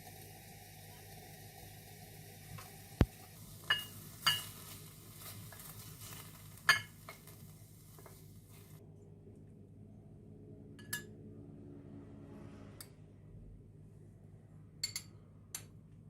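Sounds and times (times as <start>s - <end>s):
faint steady hiss: 0.0s - 8.8s.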